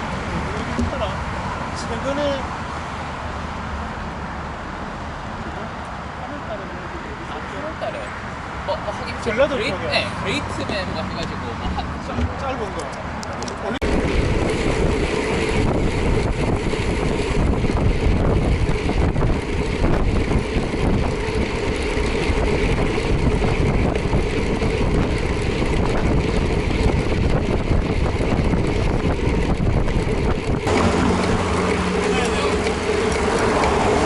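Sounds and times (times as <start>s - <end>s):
vehicle low drone: 0.0s - 34.0s
wind buffeting microphone: 9.2s - 34.0s.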